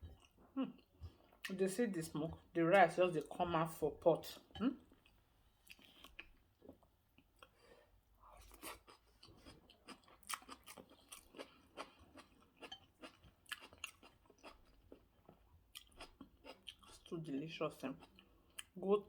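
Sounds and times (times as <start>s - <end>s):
close-up chewing: 0.0s - 1.5s, 4.9s - 7.6s, 8.2s - 17.2s.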